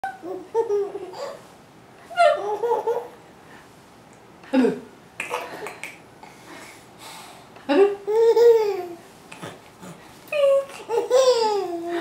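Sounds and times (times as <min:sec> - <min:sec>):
baby laughing: 0:00.0 - 0:01.4, 0:02.1 - 0:03.2, 0:08.1 - 0:09.0, 0:10.5 - 0:12.0.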